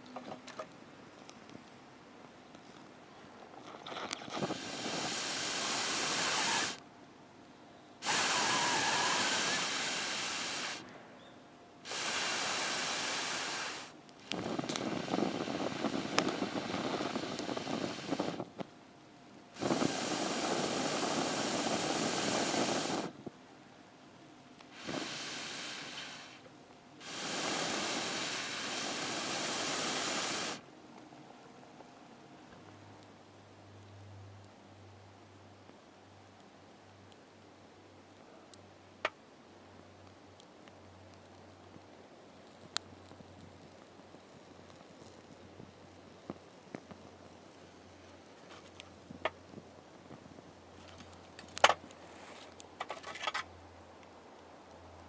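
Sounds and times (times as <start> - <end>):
hissing bursts of air: 4.2 - 6.8, 8.0 - 10.9, 11.8 - 18.5, 19.6 - 23.2, 24.7 - 30.6.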